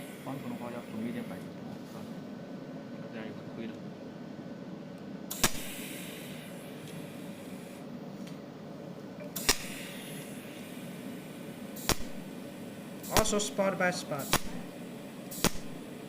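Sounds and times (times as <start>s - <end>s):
low machine hum: 0.0s - 16.0s
welding arc snaps: 5.3s - 5.9s, 9.4s - 9.8s, 11.8s - 12.3s, 13.1s - 13.6s, 14.2s - 14.7s, 15.3s - 15.8s
hiss: 5.3s - 7.8s, 9.4s - 13.5s, 14.2s - 14.7s, 15.3s - 16.0s.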